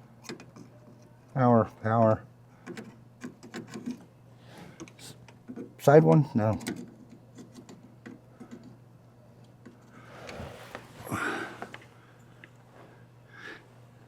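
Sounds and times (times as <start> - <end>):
rustling: 9.8 - 12.0.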